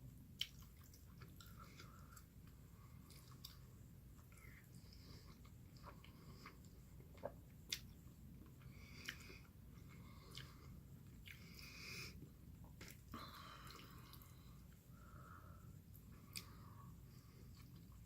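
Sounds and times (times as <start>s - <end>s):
person chewing: 0.4s - 2.3s, 3.0s - 3.6s, 4.2s - 14.7s, 15.9s - 16.6s.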